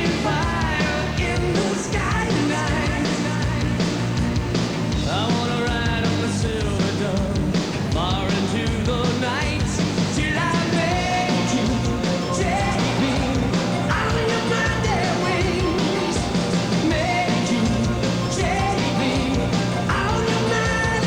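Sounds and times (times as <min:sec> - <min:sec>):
rock song with singing: 0:00.0 - 0:21.0.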